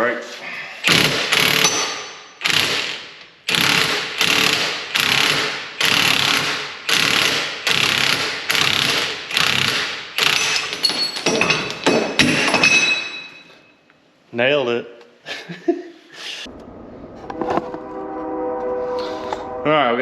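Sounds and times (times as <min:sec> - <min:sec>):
impact wrench hammering: 0:00.8 - 0:13.4
metal ringing: 0:10.4 - 0:13.8.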